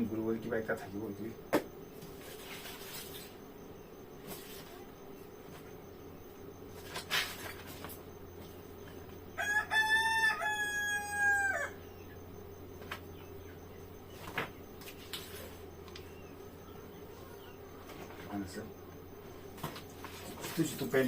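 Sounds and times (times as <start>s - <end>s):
faint steady hum: 0.0s - 21.0s
rooster crowing: 9.2s - 12.2s.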